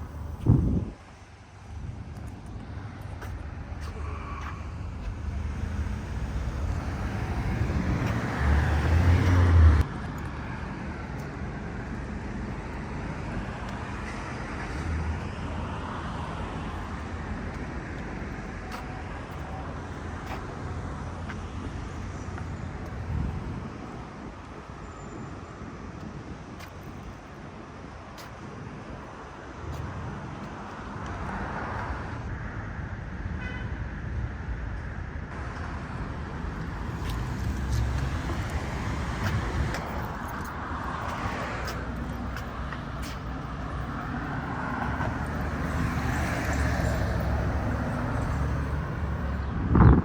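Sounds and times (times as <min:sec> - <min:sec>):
cars driving past: 0:02.6 - 0:23.9, 0:35.3 - 0:50.0.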